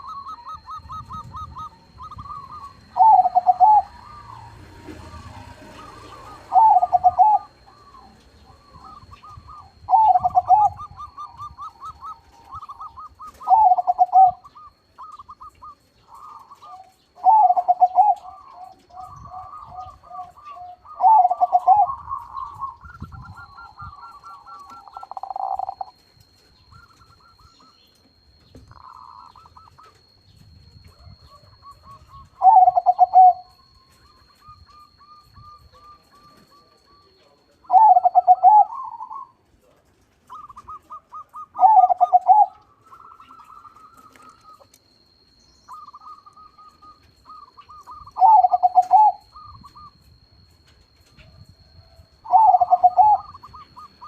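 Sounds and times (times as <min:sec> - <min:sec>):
dove cooing: 0:00.0 - 0:54.0.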